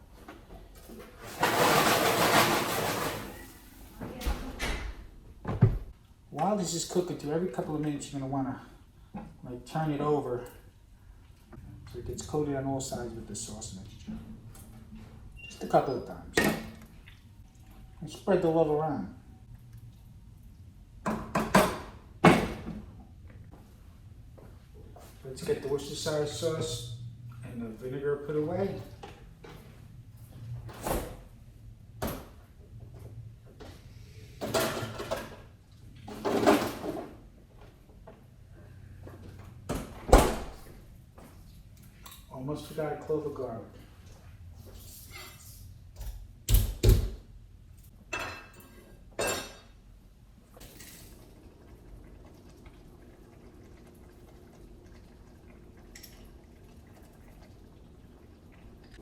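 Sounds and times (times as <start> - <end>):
cupboard doors and bottles clattering: 0.6 - 5.9, 34.4 - 37.2
sauce bubbling in a skillet: 51.2 - 59.0.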